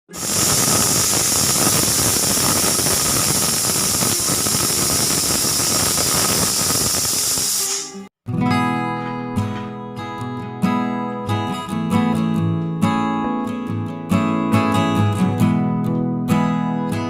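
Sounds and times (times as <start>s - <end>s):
pressure cooker whistle hissing: 0.1s - 8.1s
acoustic guitar music: 7.9s - 17.0s.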